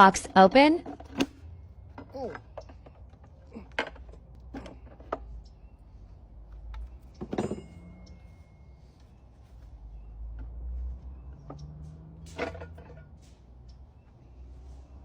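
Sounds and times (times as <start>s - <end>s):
metal clunk with ringing tone: 7.1s - 9.0s, 12.2s - 13.2s.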